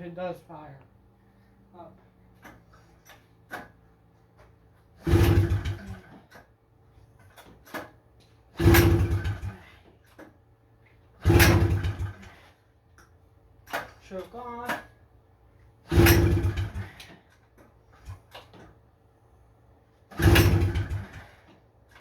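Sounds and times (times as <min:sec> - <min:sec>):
recoil starter yanks: 0:02.3 - 0:19.0, 0:19.9 - 0:22.0
engine turning over: 0:04.9 - 0:06.5, 0:07.2 - 0:10.2, 0:11.2 - 0:12.6, 0:15.8 - 0:18.7, 0:20.0 - 0:22.0.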